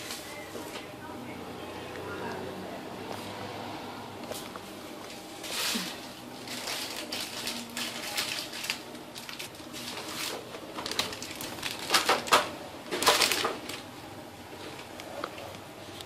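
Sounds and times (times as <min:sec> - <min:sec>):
plastic packaging crinkling: 0:05.4 - 0:13.9.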